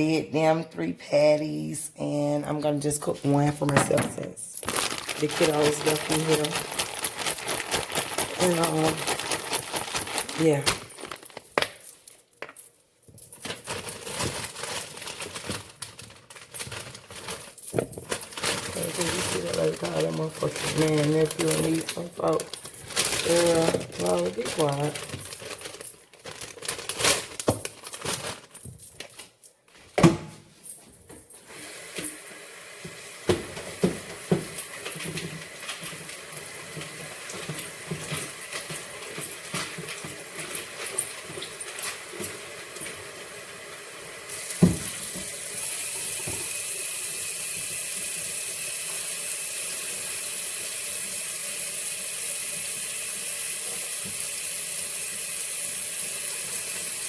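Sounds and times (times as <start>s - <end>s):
knocks and clatter of objects: 3.4s - 29.3s, 33.3s - 43.0s, 44.6s - 45.3s
tap water running: 31.5s - 34.6s, 39.8s - 57.0s.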